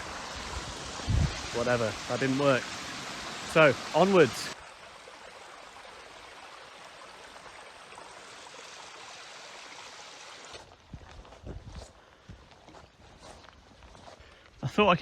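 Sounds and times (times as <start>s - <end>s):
rushing mountain stream: 0.0s - 11.8s.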